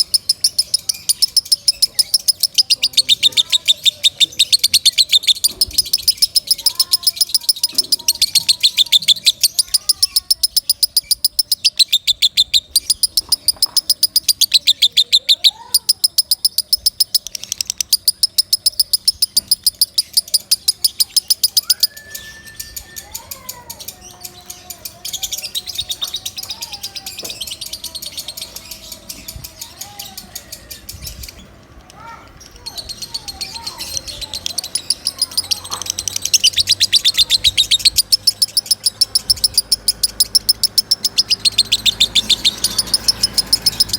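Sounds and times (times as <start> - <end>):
lovebird chirping shrilly: 0.0 - 23.2, 32.0 - 43.9.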